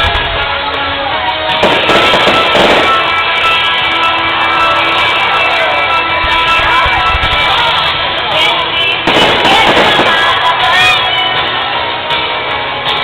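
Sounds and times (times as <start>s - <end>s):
music playing: 0.0s - 13.0s
fireworks crackling: 1.5s - 5.6s, 8.9s - 11.3s.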